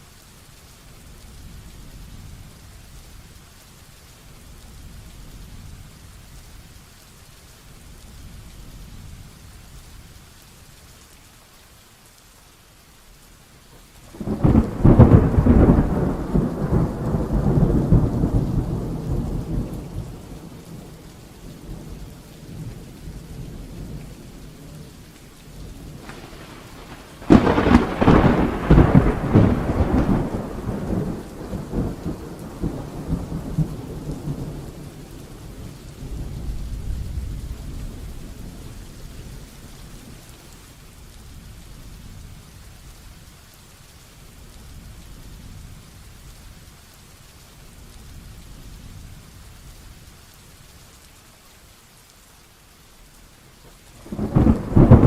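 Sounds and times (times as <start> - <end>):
heavy rain falling: 0.0 - 55.0
thunder claps rumbling: 14.1 - 24.9, 25.7 - 39.3, 54.0 - 55.0
faint roll of thunder: 14.1 - 25.0, 25.7 - 40.3, 53.9 - 55.0.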